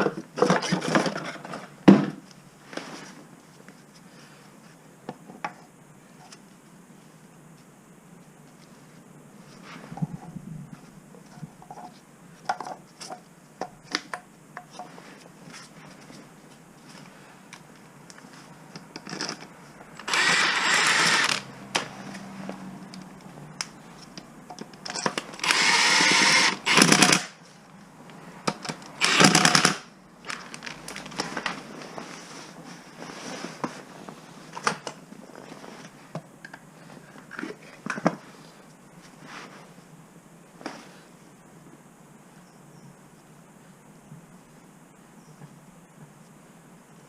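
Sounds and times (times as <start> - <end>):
impact wrench bursts: 20.0 - 21.5, 25.4 - 27.4, 29.0 - 29.9
hand tools clicking and knocking: 28.5 - 29.8.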